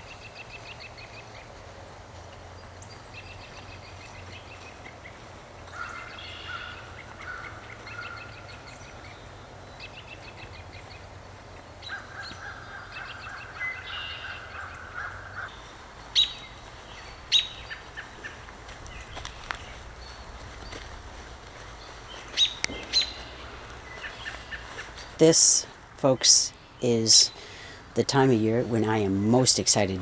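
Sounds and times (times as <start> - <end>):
birds calling and singing: 0.0 - 30.0
long drawn-out bird call: 3.2 - 25.8
short sharp bird calls: 5.7 - 9.2, 11.8 - 25.8.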